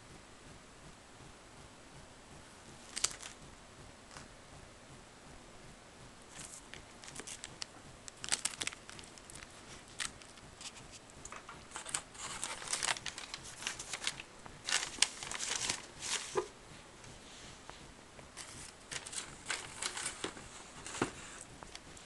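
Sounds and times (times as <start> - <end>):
paper crinkling and rustling: 2.9 - 3.4, 6.3 - 16.5, 18.4 - 21.8.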